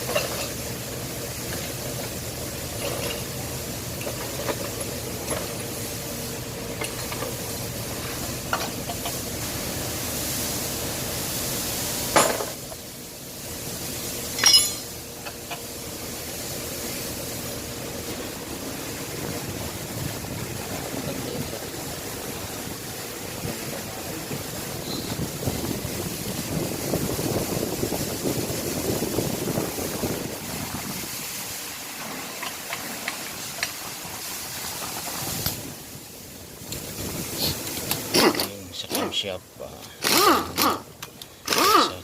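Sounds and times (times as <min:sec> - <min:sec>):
metal engine parts clinking: 0:00.0 - 0:00.6, 0:14.3 - 0:15.5
steady background hum: 0:00.0 - 0:42.0.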